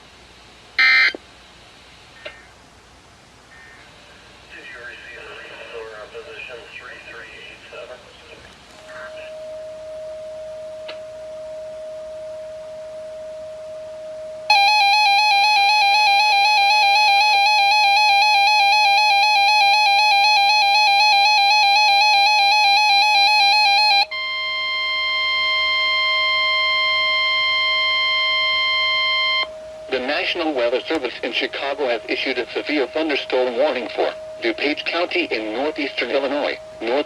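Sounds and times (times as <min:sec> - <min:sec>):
steady warning alarm tone: 0:00.8 - 0:01.2, 0:08.8 - 0:37.0
warbling alarm tone: 0:00.8 - 0:01.2, 0:09.0 - 0:37.0
radio hiss: 0:03.5 - 0:09.4, 0:29.9 - 0:37.0
faint steady tone: 0:03.5 - 0:37.0.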